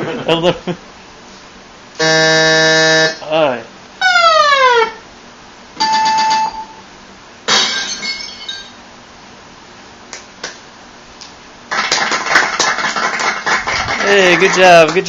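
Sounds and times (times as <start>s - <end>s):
glassy clink with ringing tone: 5.8s - 6.8s, 7.7s - 8.8s
sharp glass breaking crash: 7.5s - 8.8s
dense loud clattering: 12.5s - 15.0s.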